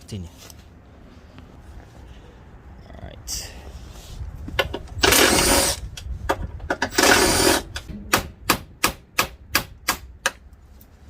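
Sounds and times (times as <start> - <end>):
power tool bursts: 5.0 - 5.8, 6.8 - 7.7.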